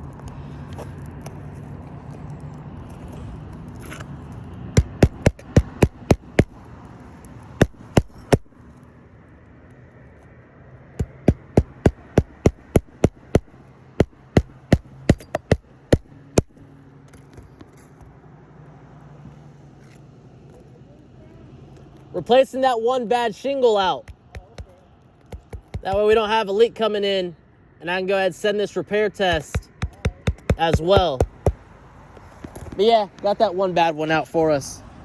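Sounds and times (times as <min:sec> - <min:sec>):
hammer strikes: 0:04.7 - 0:06.6, 0:07.6 - 0:08.5, 0:11.0 - 0:16.6, 0:24.0 - 0:24.7, 0:25.3 - 0:26.3, 0:29.3 - 0:31.6.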